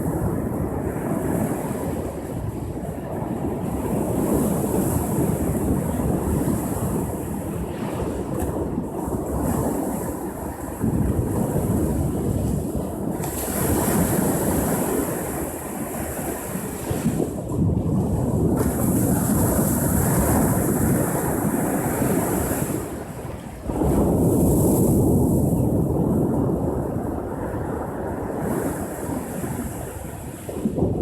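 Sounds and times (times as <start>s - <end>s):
ocean surf breaking: 18.6s - 25.8s.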